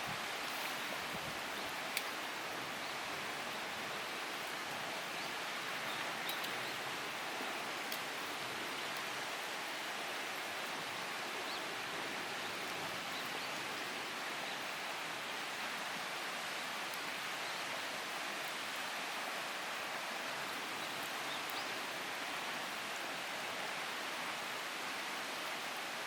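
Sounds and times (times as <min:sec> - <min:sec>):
bonfire hissing and crackling: 0:00.0 - 0:14.2.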